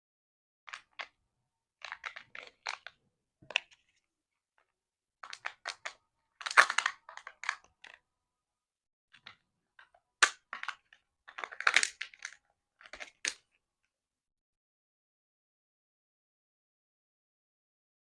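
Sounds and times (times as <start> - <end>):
plastic and foil packaging crinkling: 5.2 - 8.0, 10.6 - 13.4.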